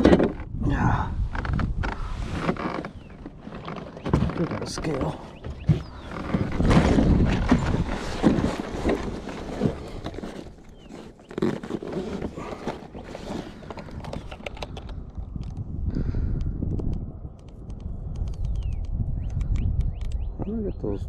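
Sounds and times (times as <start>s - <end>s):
microphone handling rumble: 0.0s - 20.8s
fishing gear knocking and clicking: 13.6s - 15.6s.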